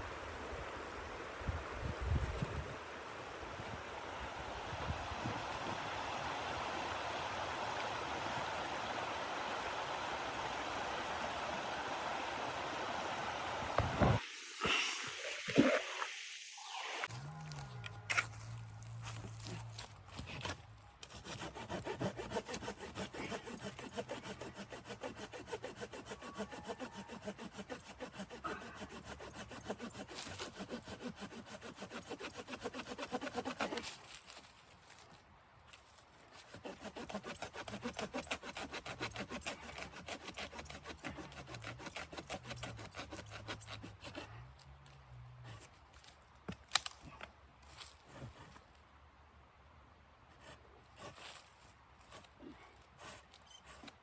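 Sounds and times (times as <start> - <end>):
hand saw cutting wood: 19.3 - 34.2, 36.3 - 44.6, 50.3 - 54.0.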